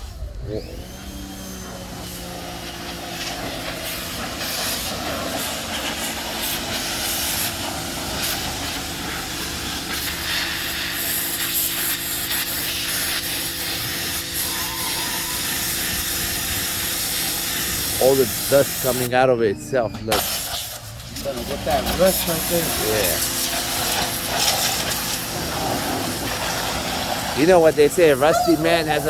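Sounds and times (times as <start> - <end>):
pressure washer water jet hissing: 0.0 - 29.0
pump motor humming: 0.0 - 29.0.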